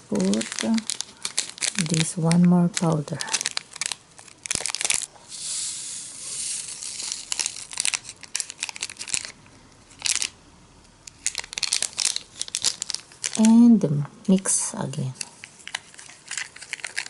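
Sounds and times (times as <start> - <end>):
plastic sachet crinkling: 0.0 - 10.4, 11.0 - 14.0, 14.6 - 17.0
steady hiss: 5.0 - 9.0.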